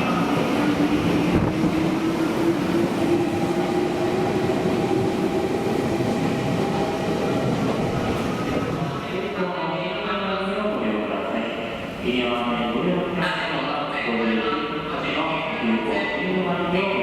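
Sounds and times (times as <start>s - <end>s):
electric train wheels rumbling: 0.0s - 9.4s.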